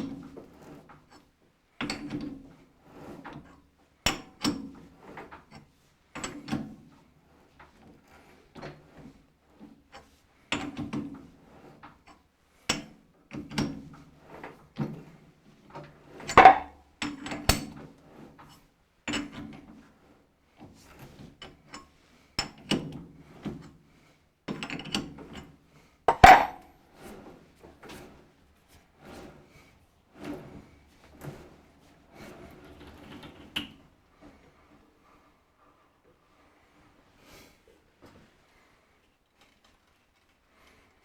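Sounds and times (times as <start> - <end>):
loud metal clanks: 16.4 - 16.7, 26.1 - 26.6.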